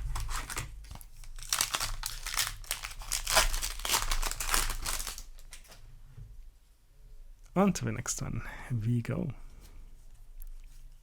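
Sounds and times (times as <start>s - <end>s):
foil wrapper crinkling: 0.0s - 5.8s.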